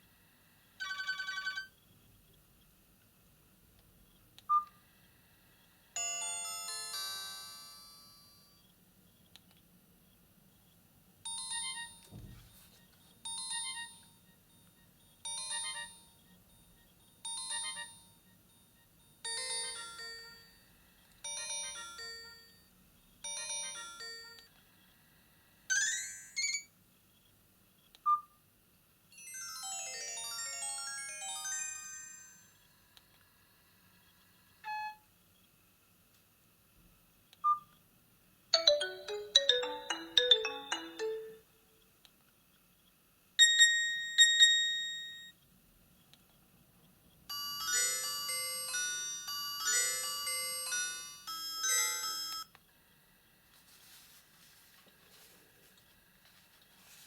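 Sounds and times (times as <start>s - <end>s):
phone ringtones: 0.8s - 1.8s, 38.6s - 41.5s.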